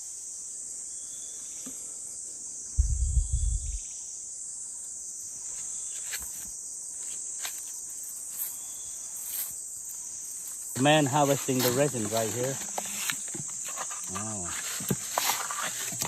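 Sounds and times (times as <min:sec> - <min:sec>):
insects trilling: 0:00.0 - 0:16.0
loud low rumble: 0:02.8 - 0:03.8.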